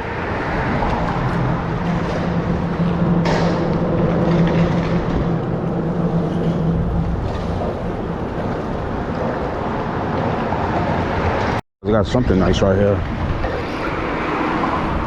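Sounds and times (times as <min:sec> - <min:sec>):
water noise: 0:00.0 - 0:11.6
wind noise on microphone: 0:12.3 - 0:15.0.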